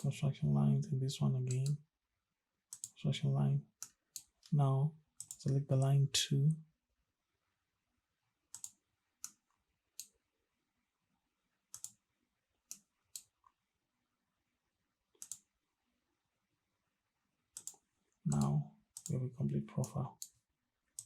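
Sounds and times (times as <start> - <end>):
computer mouse clicking: 1.5 - 1.8, 2.7 - 3.0, 3.8 - 4.6, 5.2 - 5.6, 8.5 - 10.2, 11.7 - 12.0, 12.7 - 13.6, 15.1 - 15.5, 17.6 - 19.2.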